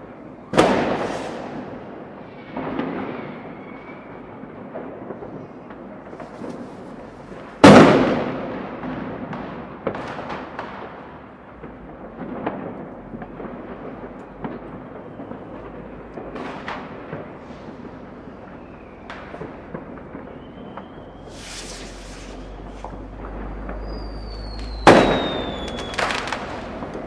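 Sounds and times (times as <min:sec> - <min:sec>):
distant fireworks: 0:00.0 - 0:27.0
smaller firework bangs and pops: 0:00.0 - 0:27.0
loud firework bang: 0:00.5 - 0:27.0.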